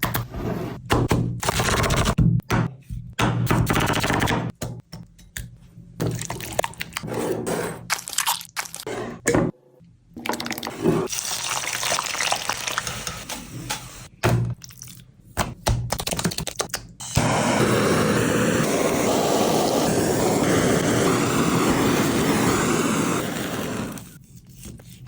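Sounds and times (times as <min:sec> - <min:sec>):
wet squishing: 0:07.9 - 0:08.8
liquid pouring: 0:10.3 - 0:13.2.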